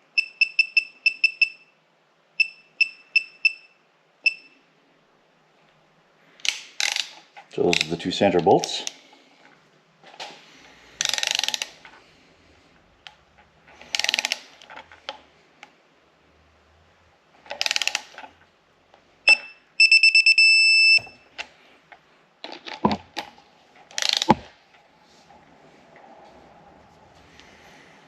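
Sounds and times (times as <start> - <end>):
ratchet wrench clicking: 11.0 - 11.7, 13.9 - 14.4, 17.5 - 18.1, 24.0 - 24.4
dull clunks of a tool: 24.3 - 24.5.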